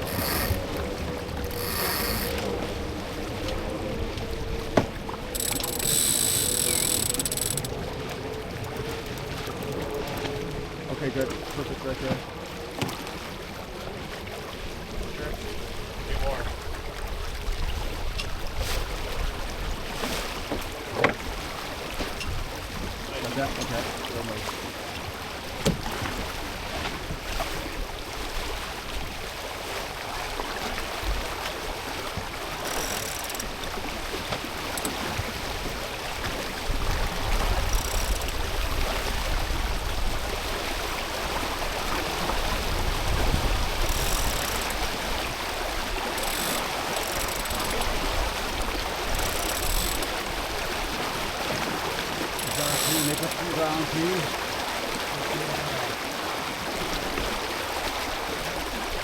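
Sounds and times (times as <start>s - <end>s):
water rushing along hull: 0.0s - 59.0s
wind buffeting microphone: 42.1s - 46.0s.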